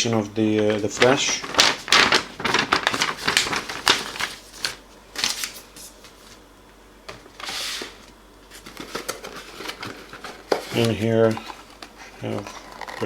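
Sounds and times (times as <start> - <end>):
paper and plastic rustling: 0.4 - 6.4, 7.1 - 13.0
packaging clicks: 0.6 - 5.6, 8.6 - 13.0.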